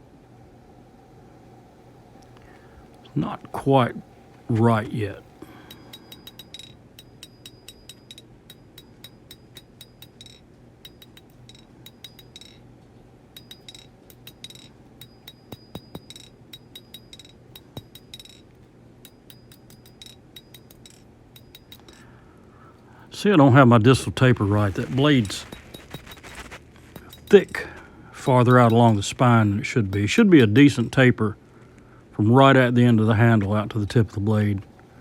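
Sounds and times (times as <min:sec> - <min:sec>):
hammer tapping steel on anvil: 0:05.6 - 0:12.7, 0:13.4 - 0:22.1, 0:27.0 - 0:31.0.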